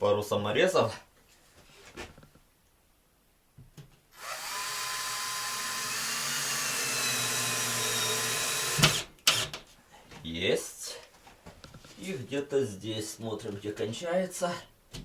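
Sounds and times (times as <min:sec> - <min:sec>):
cordless drill driving screw: 0:04.2 - 0:09.6.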